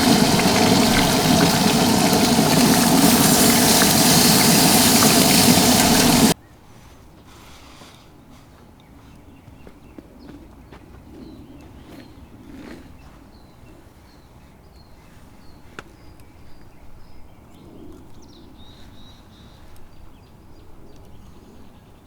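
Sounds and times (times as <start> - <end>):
outdoor background noise: 0.0 - 11.0.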